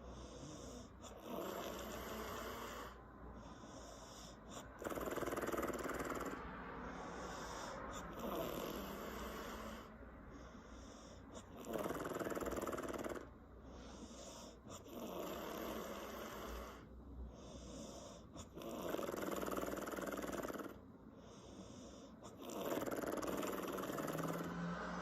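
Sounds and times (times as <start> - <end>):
woman snoring with lip flapping: 0.0 - 3.0, 4.6 - 6.4, 8.0 - 9.9, 11.4 - 13.3, 14.8 - 16.9, 18.4 - 20.8, 22.2 - 25.0
quiet breathing: 0.0 - 4.9, 5.6 - 11.9, 12.6 - 25.0.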